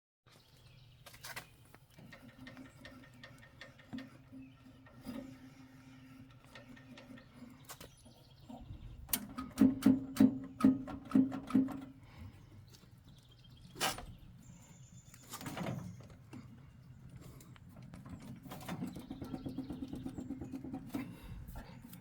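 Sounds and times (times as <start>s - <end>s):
engine knocking: 18.9s - 21.1s.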